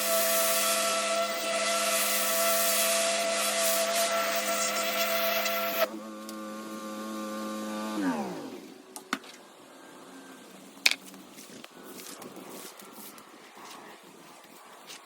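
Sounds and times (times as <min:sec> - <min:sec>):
water spray hissing: 0:00.0 - 0:05.9
pressure washer running: 0:00.0 - 0:08.5.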